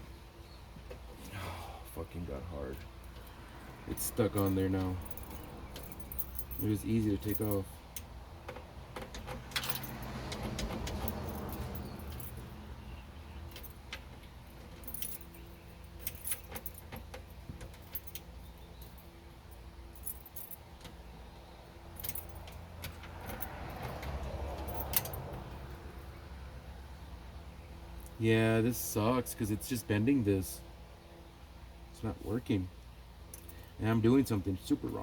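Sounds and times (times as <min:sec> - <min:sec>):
keys jangling: 0:04.2 - 0:07.6, 0:09.2 - 0:12.6, 0:14.6 - 0:19.1, 0:21.9 - 0:26.1.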